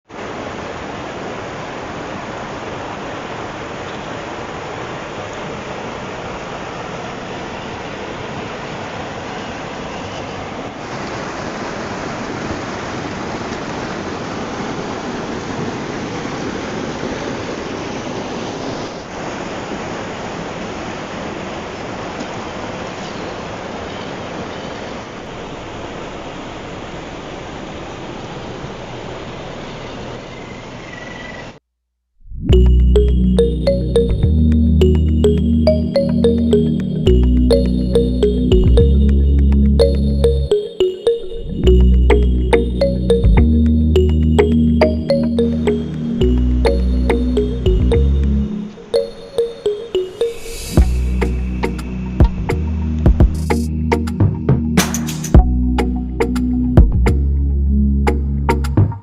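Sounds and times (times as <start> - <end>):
river water rushing: 0.1 - 30.2.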